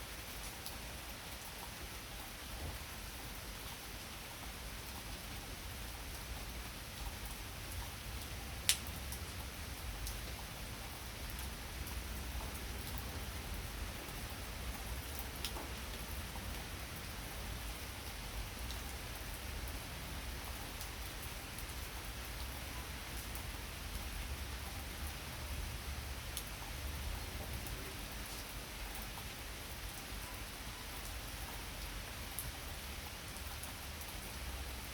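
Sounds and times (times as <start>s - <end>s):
drip ticks: 8.7s - 8.9s.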